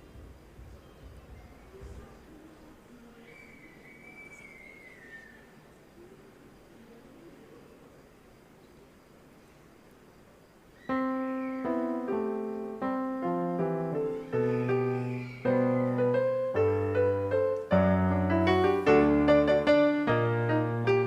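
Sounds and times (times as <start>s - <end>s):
keyboard piano chords: 10.9s - 21.0s.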